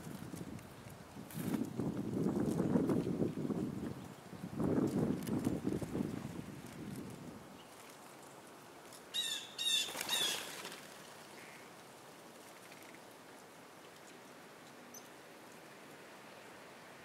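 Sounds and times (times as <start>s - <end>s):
bird trilled calls: 9.1s - 10.5s.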